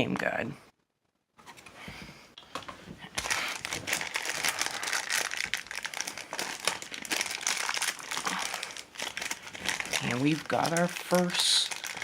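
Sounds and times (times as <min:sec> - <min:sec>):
plastic packaging crinkling: 0:03.2 - 0:12.0.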